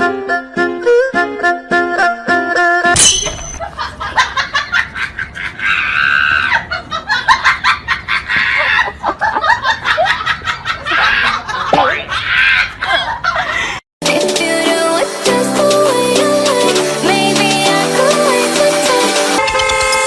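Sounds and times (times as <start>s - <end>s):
person laughing hard: 3.6s - 13.8s.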